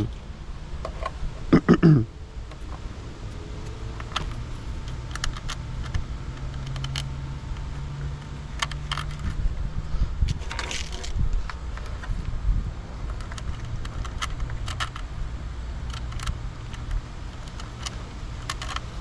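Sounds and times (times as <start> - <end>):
small metal hardware clinking: 10.3 - 11.6.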